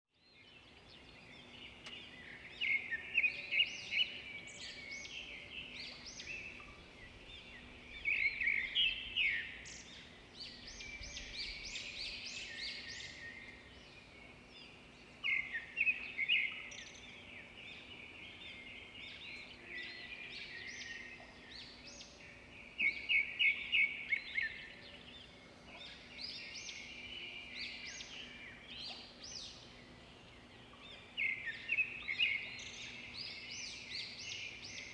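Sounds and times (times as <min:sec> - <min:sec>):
small birds chirping: 0:00.2 - 0:34.9.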